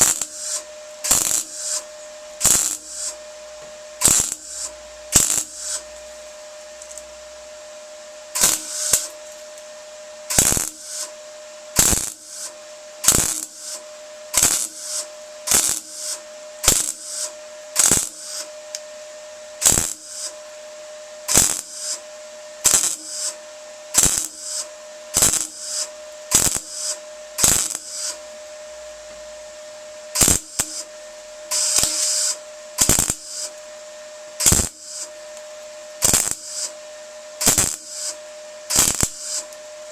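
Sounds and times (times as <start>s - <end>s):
welding crackle: 0.0s - 7.2s, 8.4s - 9.7s, 10.3s - 11.2s, 11.8s - 13.8s, 14.4s - 18.8s, 19.6s - 20.4s, 21.3s - 22.0s, 22.6s - 23.4s, 24.0s - 28.2s, 30.2s - 33.7s, 34.4s - 35.4s, 36.0s - 36.8s, 37.4s - 39.6s
steady welder whine: 0.0s - 39.9s.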